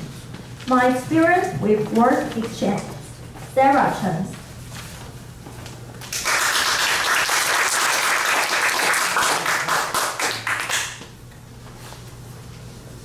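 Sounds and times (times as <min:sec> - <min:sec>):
audience applauding: 0:06.1 - 0:11.0.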